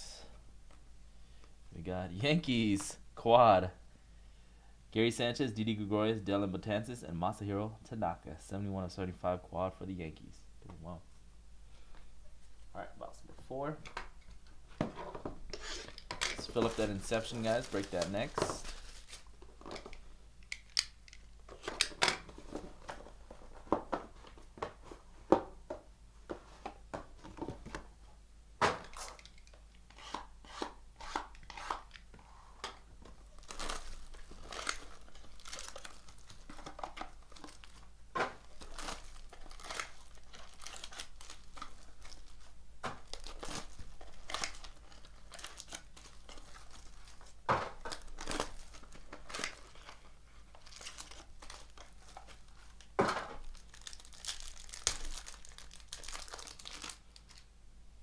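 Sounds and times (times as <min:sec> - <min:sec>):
wrappers crinkling and tearing: 0:15.9 - 0:19.4, 0:33.3 - 0:57.5.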